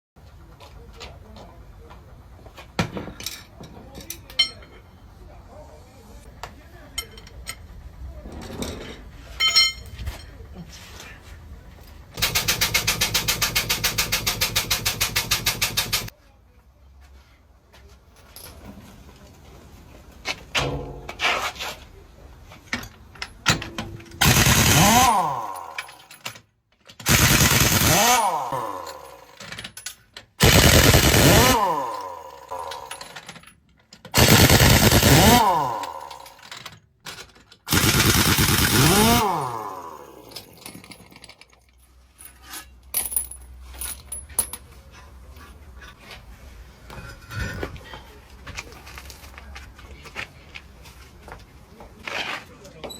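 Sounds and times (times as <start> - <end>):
metal clanks and knocks: 2.7 - 4.9, 7.0 - 10.4, 20.5 - 21.6, 22.6 - 24.2
impact wrench bursts: 12.2 - 16.1, 24.1 - 26.3, 27.0 - 29.6, 30.4 - 33.4, 34.1 - 36.8, 37.7 - 41.3.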